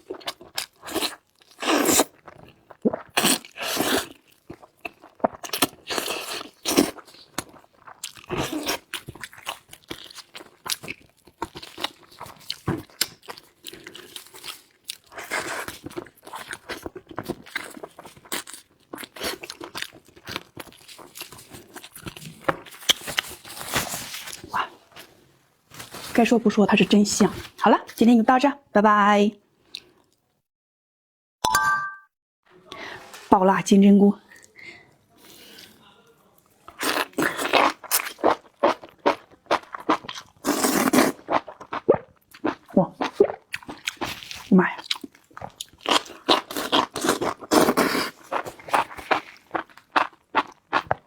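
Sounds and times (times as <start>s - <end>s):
person chewing crunchy food: 0.0s - 24.6s, 36.7s - 51.0s.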